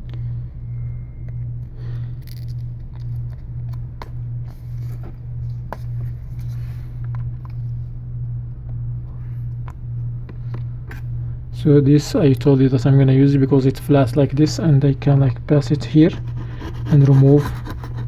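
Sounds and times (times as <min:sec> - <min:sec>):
steady low hum: 0:00.0 - 0:18.0
tool scraping and clicking: 0:15.8 - 0:18.0.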